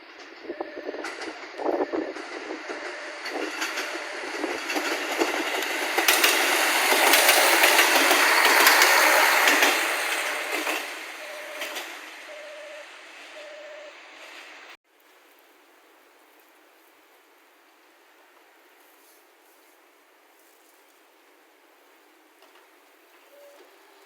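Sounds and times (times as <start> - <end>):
wheels clicking over rails: 0.0 - 14.7
train passing by: 0.0 - 14.8
short repeating tone: 10.4 - 13.9.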